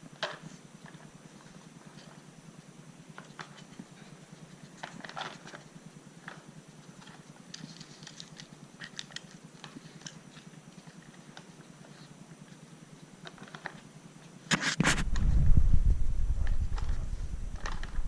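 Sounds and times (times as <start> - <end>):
low rumbling noise: 14.8 - 18.0.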